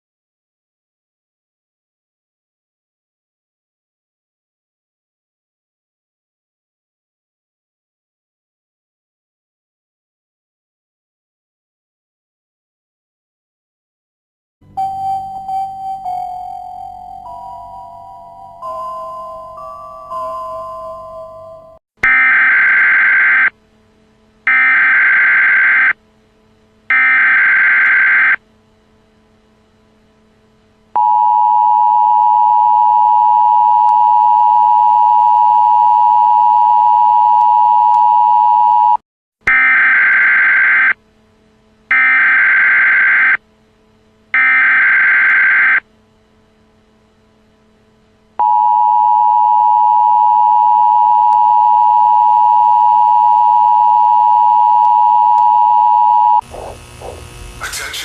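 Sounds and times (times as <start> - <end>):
screechy data header bursts: 56.4 - 58.0.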